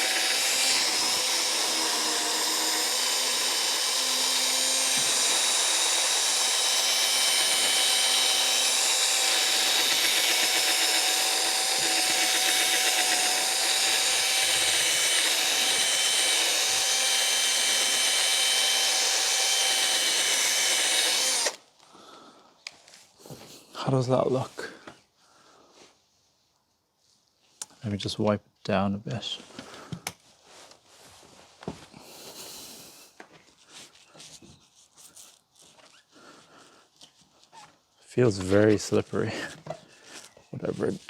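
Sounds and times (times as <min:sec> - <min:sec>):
cordless drill whining: 0:00.0 - 0:21.7.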